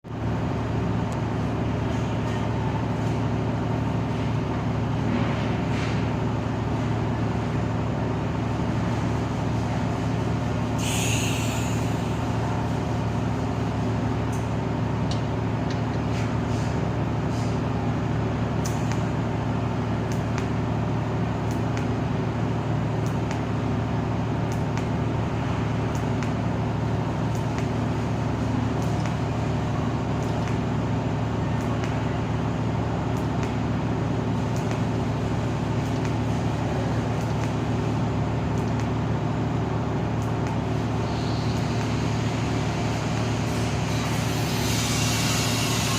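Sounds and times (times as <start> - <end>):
welder electrical hum: 0.1 - 45.9
short high hiss: 10.8 - 12.1.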